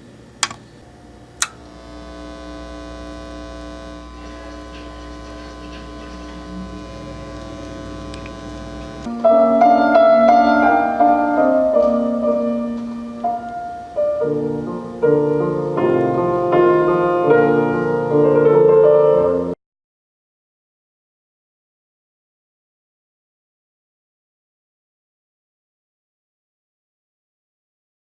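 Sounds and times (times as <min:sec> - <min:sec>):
steady hum: 0:00.0 - 0:19.6
piano music: 0:02.6 - 0:19.6.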